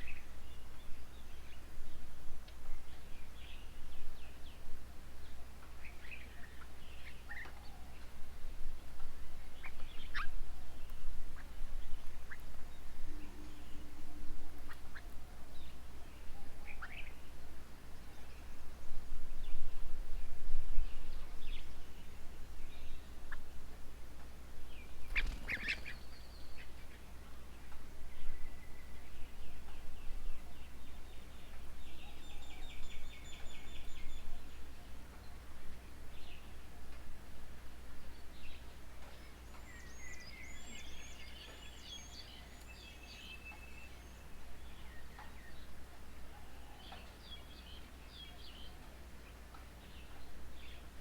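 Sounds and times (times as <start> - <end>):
songbirds singing and calling: 0.0 - 51.0
birds calling: 24.8 - 27.8.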